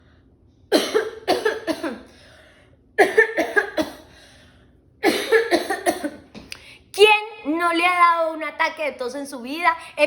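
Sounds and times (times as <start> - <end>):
person coughing: 0.7 - 2.2, 3.0 - 4.2, 5.0 - 6.4.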